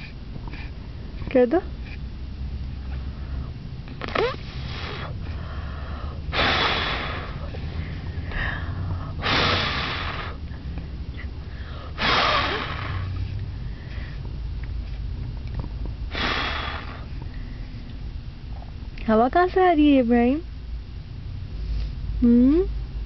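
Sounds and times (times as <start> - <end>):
steady low hum: 0.0 - 23.0
baby blowing puffs of air: 4.0 - 10.4, 11.5 - 14.2, 16.1 - 17.2.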